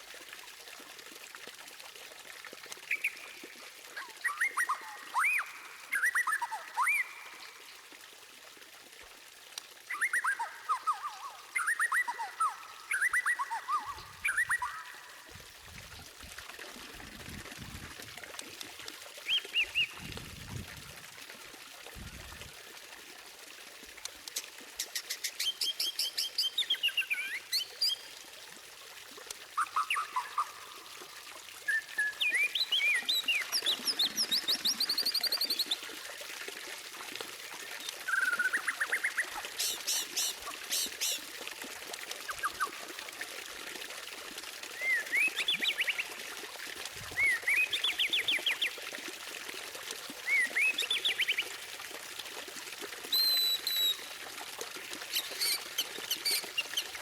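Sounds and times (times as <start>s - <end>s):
bird singing whistled song: 4.0s - 7.2s, 9.9s - 14.9s, 25.4s - 28.0s, 31.7s - 35.8s, 44.8s - 46.0s, 47.2s - 48.6s, 50.2s - 51.4s, 53.1s - 54.1s.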